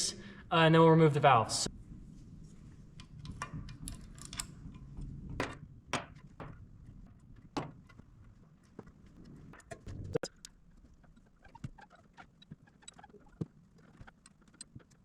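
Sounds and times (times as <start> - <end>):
tools clicking and knocking: 3.0 - 8.4.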